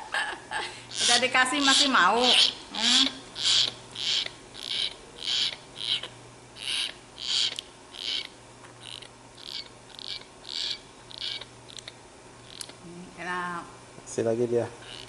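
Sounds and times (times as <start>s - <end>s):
myna harsh rasping calls: 0.9s - 11.5s, 14.8s - 15.0s.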